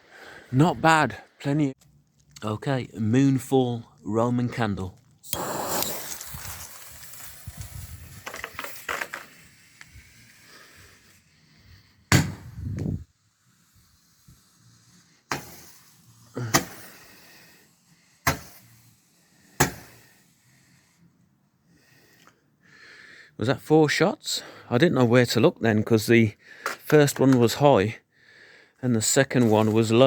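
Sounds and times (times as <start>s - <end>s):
firework pops: 5.3s - 8.8s, 15.3s - 15.9s, 16.5s - 16.9s, 18.3s - 18.7s
fuse hissing and sputtering: 5.3s - 11.9s.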